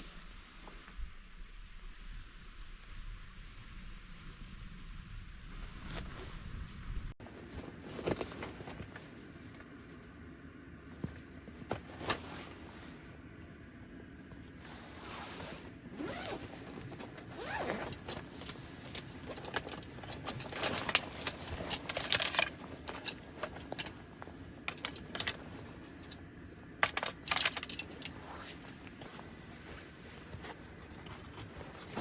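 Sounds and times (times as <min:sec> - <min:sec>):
rustling scrapes: 0:07.2 - 0:09.5, 0:11.0 - 0:13.2, 0:14.5 - 0:26.3, 0:27.3 - 0:32.0
small clinks and clicks: 0:16.0 - 0:29.1.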